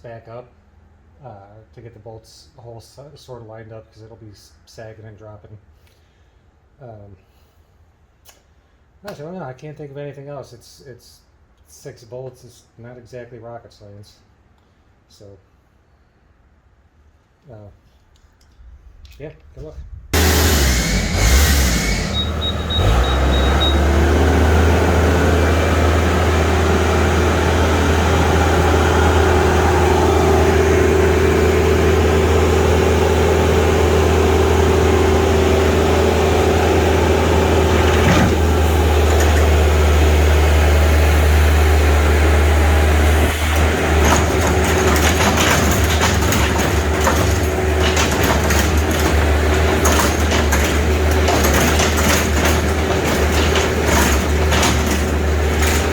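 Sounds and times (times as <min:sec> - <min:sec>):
heavy equipment engine humming: 0:20.2 - 0:55.9
clattering rattle: 0:37.2 - 0:40.0, 0:43.5 - 0:55.9.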